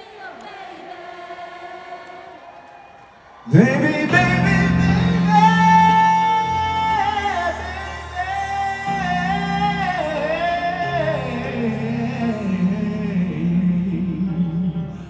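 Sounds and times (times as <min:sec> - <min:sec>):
man singing ballad: 0:03.5 - 0:15.0
sustained band chords: 0:03.9 - 0:15.0.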